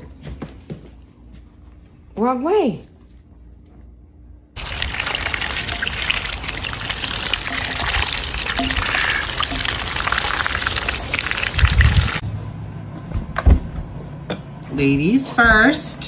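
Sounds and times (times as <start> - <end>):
water gushing: 4.6 - 12.2.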